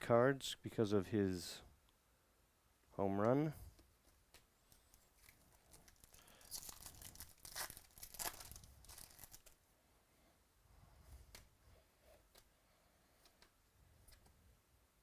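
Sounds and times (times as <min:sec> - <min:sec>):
wrapper crinkling and tearing: 0:04.9 - 0:09.6.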